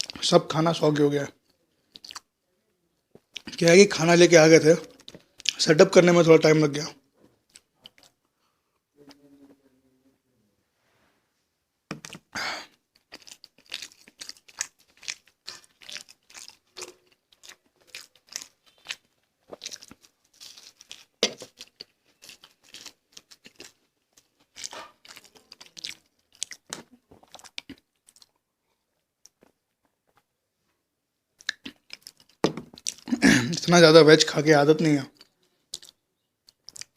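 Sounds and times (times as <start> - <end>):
chewing crunchy pastry: 1.3 - 2.4, 7.4 - 8.3, 12.0 - 30.3, 31.4 - 33.2, 34.9 - 36.9
wet mouth sounds: 1.9 - 2.3, 11.9 - 28.4, 31.4 - 33.4, 35.1 - 36.9.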